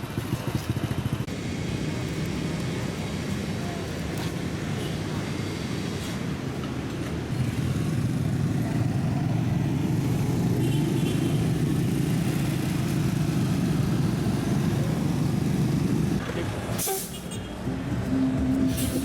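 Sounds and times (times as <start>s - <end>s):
motorbike engine rumble: 5.9s - 16.2s.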